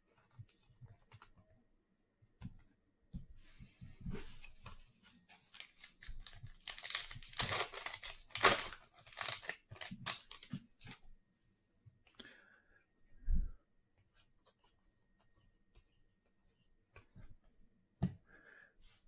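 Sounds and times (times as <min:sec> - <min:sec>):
foil wrapper tearing and crinkling: 0:05.6 - 0:10.5.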